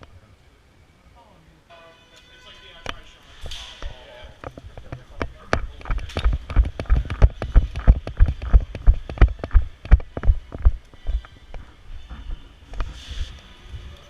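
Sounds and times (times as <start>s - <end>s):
heavy running footfalls: 5.9s - 13.0s.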